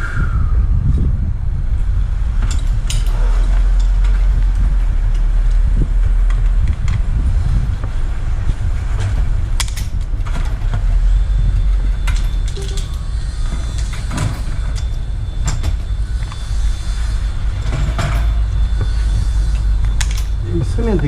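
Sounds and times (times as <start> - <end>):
wind buffeting microphone: 0.0 - 21.0
equipment clicks and knocks: 12.0 - 16.4.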